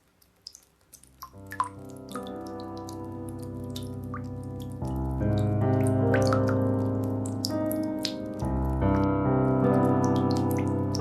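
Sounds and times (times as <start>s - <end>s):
water drops plinking: 1.0s - 6.7s
sustained keyboard chords: 1.4s - 11.0s.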